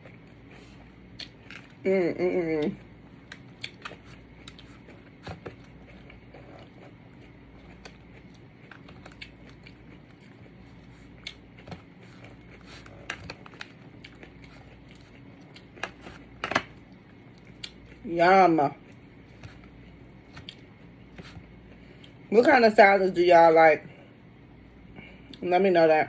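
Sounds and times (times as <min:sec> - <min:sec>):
person chewing food: 0:00.0 - 0:01.8, 0:02.6 - 0:18.1, 0:18.7 - 0:22.3.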